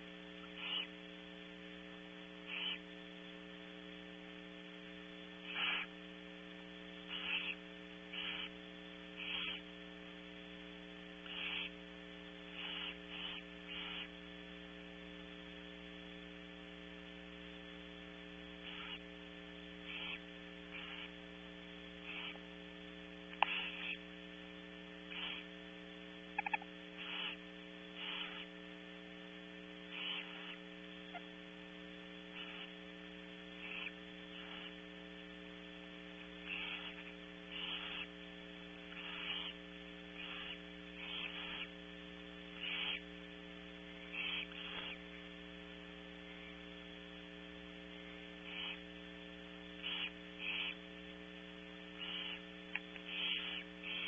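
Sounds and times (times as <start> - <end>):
steady electrical hum: 0.0 - 54.0
owls hissing: 0.4 - 0.9, 2.5 - 2.9, 5.4 - 5.9, 7.1 - 8.6, 9.2 - 9.6, 11.2 - 11.8, 12.5 - 14.1, 18.6 - 19.0, 19.8 - 21.2, 22.0 - 22.4, 23.3 - 24.0, 25.1 - 25.5, 26.3 - 28.6, 29.8 - 31.3, 32.3 - 32.8, 33.6 - 34.8, 36.4 - 38.1, 38.8 - 41.7, 42.6 - 43.1, 44.0 - 45.1, 48.4 - 48.9, 49.8 - 50.8, 52.0 - 54.0.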